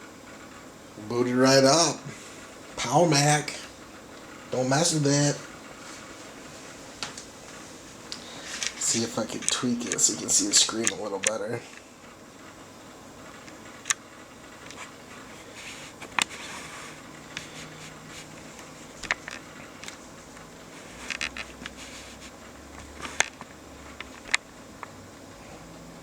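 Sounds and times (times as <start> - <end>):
computer whirring hum: 0.0 - 26.0.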